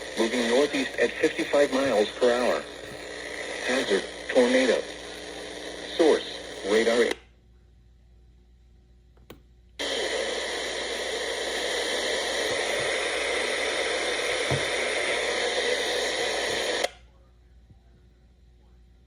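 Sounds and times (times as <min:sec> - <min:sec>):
radio static hiss: 0:00.0 - 0:07.2, 0:09.8 - 0:17.1.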